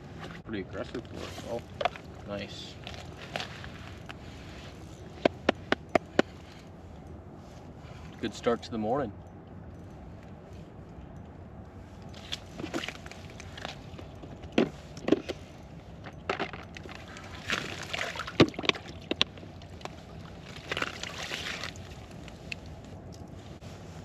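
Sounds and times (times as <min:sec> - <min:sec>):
water sloshing in ice hole: 0:12.2 - 0:14.2, 0:16.3 - 0:22.6.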